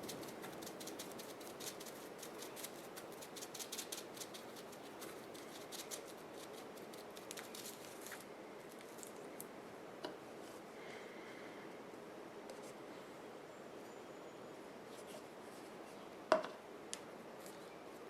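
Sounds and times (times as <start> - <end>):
paintbrush scratching on styrofoam: 0.0 - 8.2.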